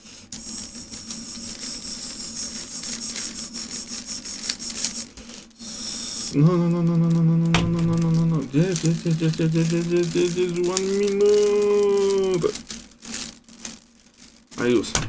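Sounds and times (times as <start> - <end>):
puzzle cube clicking and rasping: 0.3 - 15.0.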